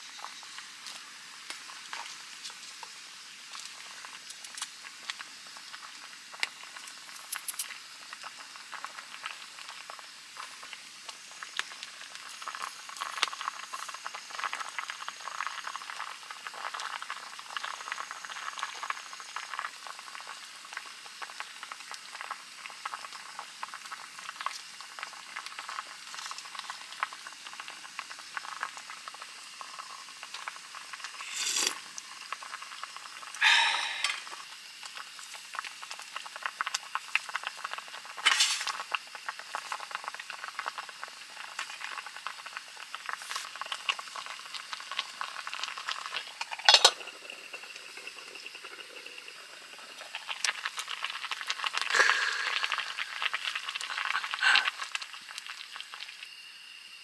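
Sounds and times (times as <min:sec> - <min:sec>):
stew bubbling in a pot: 0:00.2 - 0:56.8
utensil clinking against pot: 0:46.6 - 0:47.1.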